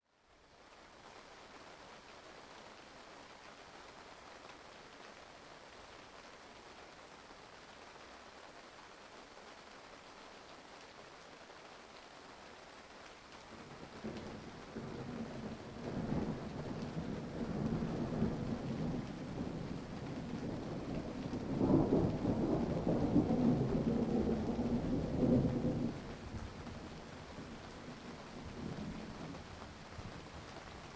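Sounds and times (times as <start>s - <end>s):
steady rain: 0.1s - 30.9s
rolling thunder rumble: 13.6s - 30.4s.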